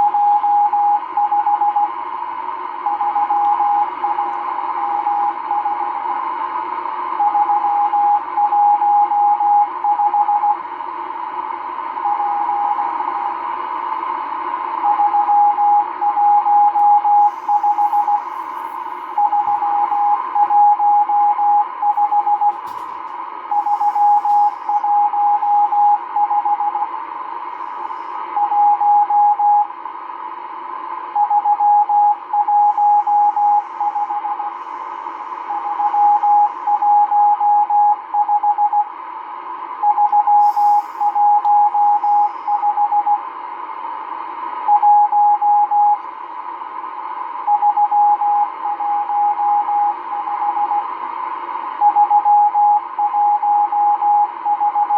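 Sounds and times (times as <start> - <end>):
morse code tone: 14.9 - 22.6, 31.2 - 34.6, 39.8 - 43.2
radio static hiss: 17.2 - 20.4, 22.0 - 25.0, 32.5 - 36.8, 40.4 - 42.7.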